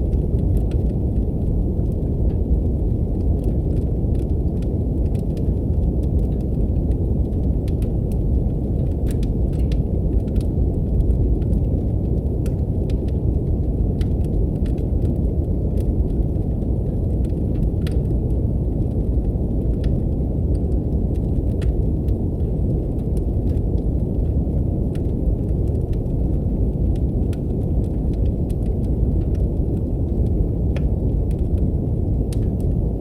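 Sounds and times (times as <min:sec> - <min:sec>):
brown noise rumble: 0:00.0 - 0:33.0
wood fire crackling: 0:00.0 - 0:33.0.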